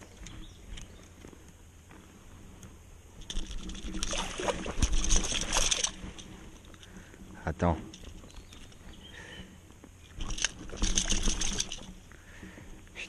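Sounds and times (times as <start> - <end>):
water splashing and sloshing: 3.3 - 6.9, 10.1 - 12.0.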